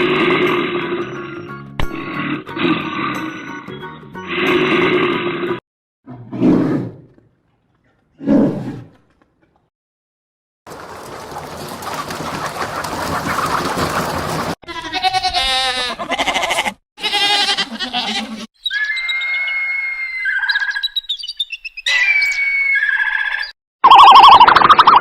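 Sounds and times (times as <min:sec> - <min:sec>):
animal sounds: 0:10.7 - 0:21.0
wavering bleats: 0:14.6 - 0:18.5.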